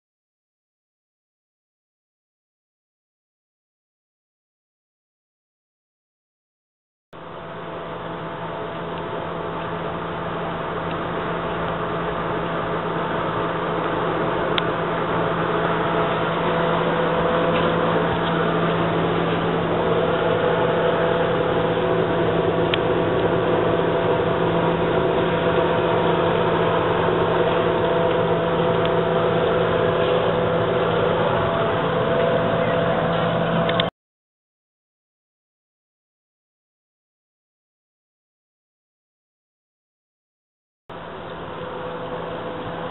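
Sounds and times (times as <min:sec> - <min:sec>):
ceiling fan running: 0:07.2 - 0:33.9, 0:40.9 - 0:42.9.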